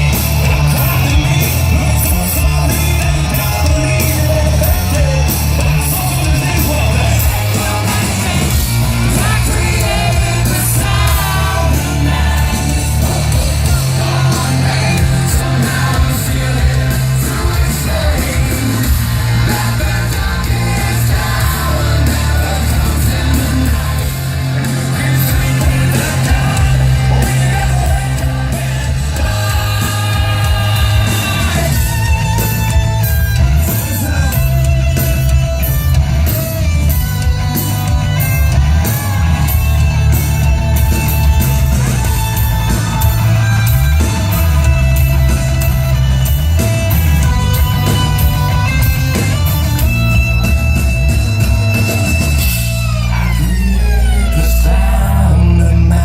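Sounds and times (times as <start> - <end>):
pounding drums: 0.0 - 54.0
electric guitar: 0.0 - 56.0
heavy bass: 0.0 - 56.0
person singing: 53.0 - 56.0.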